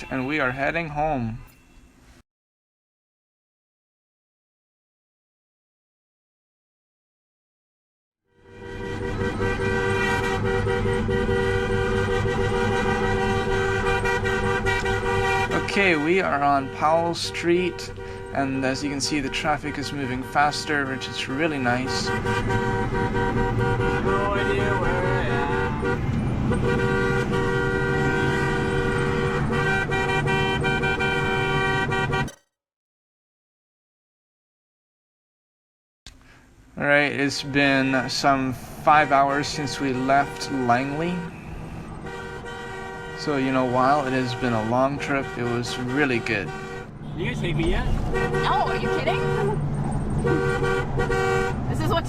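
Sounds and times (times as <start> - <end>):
vehicle horns blaring: 0.0 - 2.0, 8.3 - 32.4, 36.9 - 52.0
engine and traffic rumble: 8.3 - 32.3, 36.1 - 52.0.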